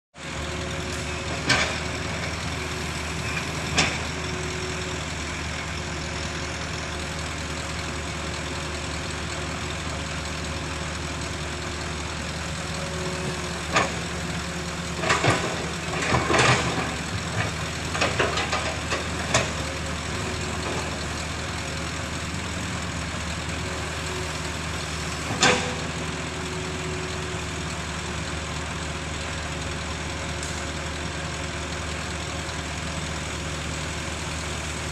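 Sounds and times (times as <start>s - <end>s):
heavy vehicle engine running: 0.2s - 34.9s.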